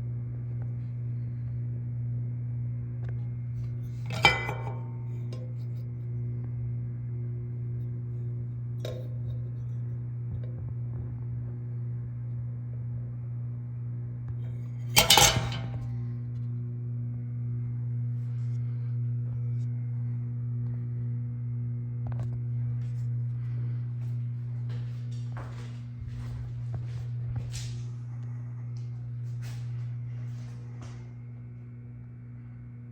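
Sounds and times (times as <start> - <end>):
ceiling fan motor hum: 0.0 - 32.9
clinking clatter: 4.1 - 5.4, 14.9 - 15.9.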